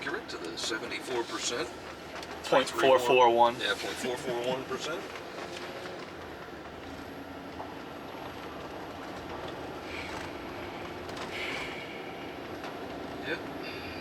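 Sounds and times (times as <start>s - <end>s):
tyre and engine rumble in car: 0.0s - 14.0s.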